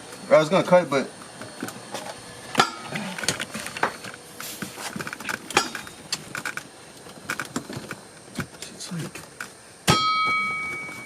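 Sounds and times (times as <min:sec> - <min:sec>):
hand tools clicking and knocking: 0:05.0 - 0:06.6.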